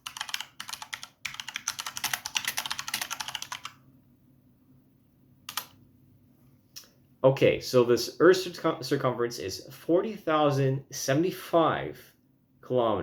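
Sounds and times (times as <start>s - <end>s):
typing on computer keyboard: 0.0s - 3.8s, 5.5s - 5.8s.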